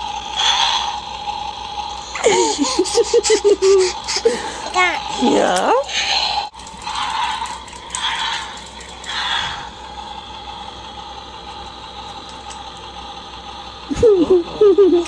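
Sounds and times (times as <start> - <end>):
toy car motor whirring: 1.9 - 9.7
toy car rattling: 6.5 - 9.7.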